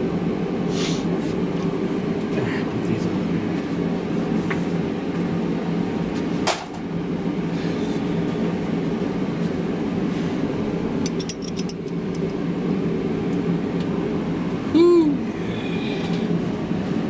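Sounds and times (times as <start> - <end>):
light metallic clinks: 10.6 - 12.4.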